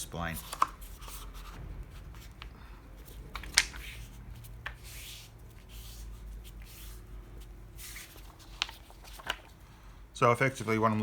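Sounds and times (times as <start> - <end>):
paper rustling: 0.2 - 9.9.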